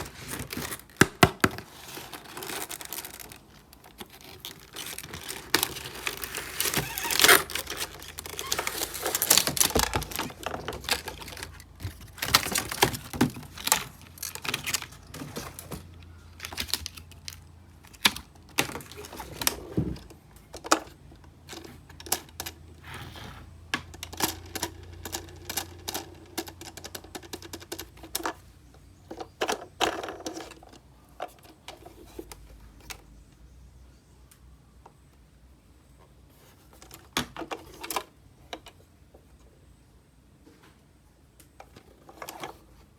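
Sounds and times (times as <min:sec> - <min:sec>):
packaging rustling: 0:00.0 - 0:20.0.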